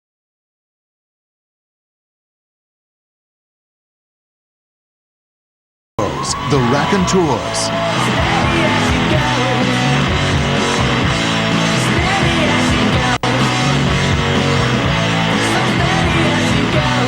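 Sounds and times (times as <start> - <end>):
rock music with guitar: 6.0 - 17.0.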